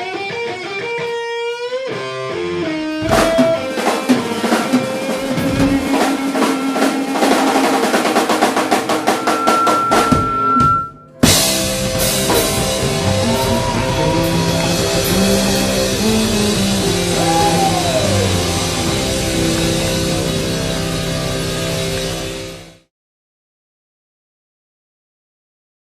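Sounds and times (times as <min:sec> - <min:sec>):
live rock band: 0:00.0 - 0:22.8
drum roll: 0:03.0 - 0:22.8.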